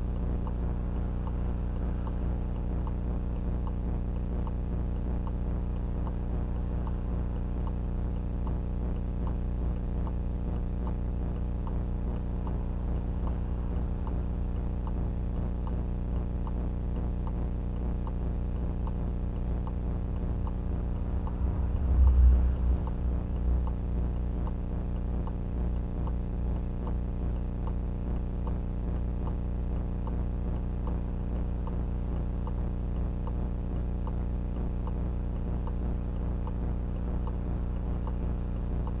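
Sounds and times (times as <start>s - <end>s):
low rumble: 0.0s - 26.8s
low hum: 0.0s - 39.0s
regular ticking: 0.0s - 39.0s.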